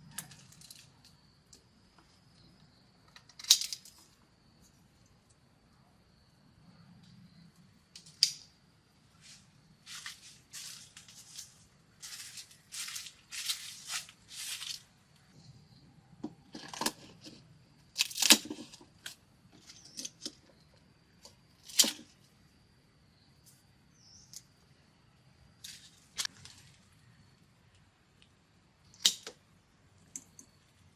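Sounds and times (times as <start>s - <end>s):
dry plant material rustling: 9.2s - 15.0s.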